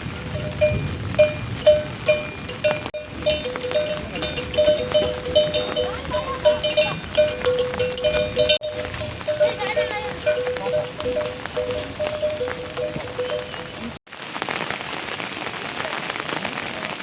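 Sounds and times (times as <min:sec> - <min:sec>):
livestock bells clanking: 0:00.0 - 0:14.0
lower bell ringing: 0:00.0 - 0:14.0.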